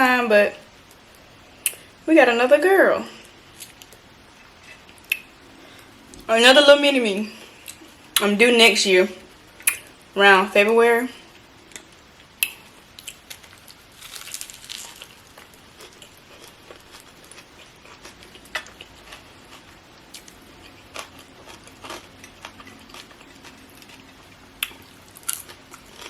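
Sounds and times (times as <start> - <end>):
wet mouth clicks: 9.6 - 9.9
person chewing: 11.7 - 26.0.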